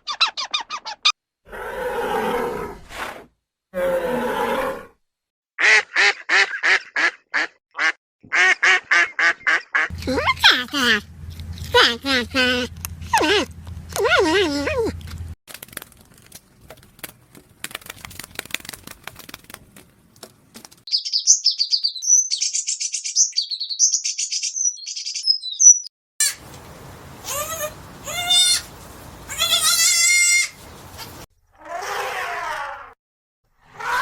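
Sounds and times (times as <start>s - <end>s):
high-pitched chirping: 20.9s - 25.9s
animal bleating: 29.3s - 30.6s.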